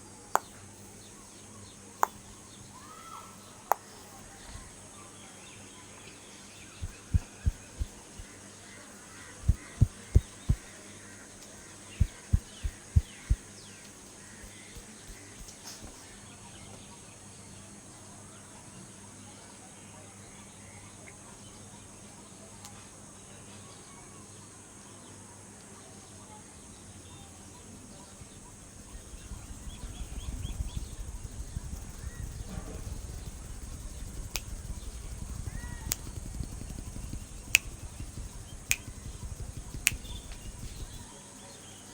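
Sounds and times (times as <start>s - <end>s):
hands rubbing over body: 6.7s - 10.8s, 11.4s - 16.1s, 28.0s - 41.8s
hands patting during massage: 6.8s - 8.4s, 9.2s - 10.8s, 11.4s - 16.1s, 28.2s - 41.1s.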